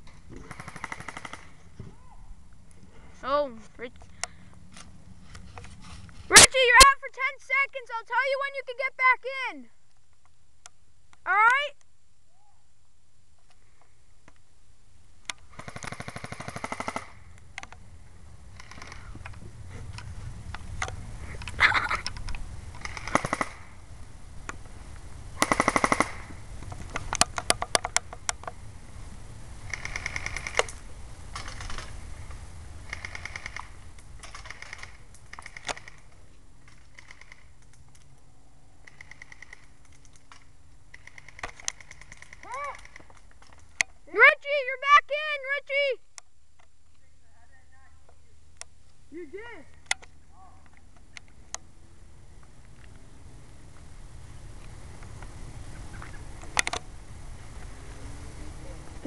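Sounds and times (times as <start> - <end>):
airsoft guns firing: 0.3 - 1.6, 15.5 - 17.3, 22.8 - 23.8, 25.4 - 26.4, 29.6 - 32.0, 32.8 - 36.1, 38.8 - 39.8, 40.4 - 43.1.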